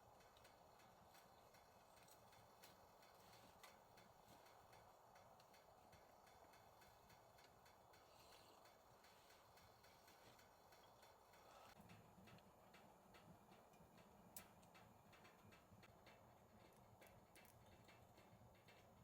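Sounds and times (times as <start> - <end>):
faint irregular clicking: 0.0 - 19.0.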